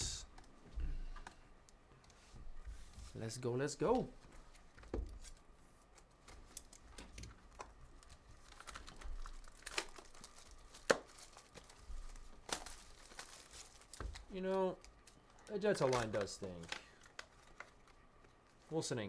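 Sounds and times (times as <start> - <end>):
wrappers tearing and crinkling: 6.1 - 18.6.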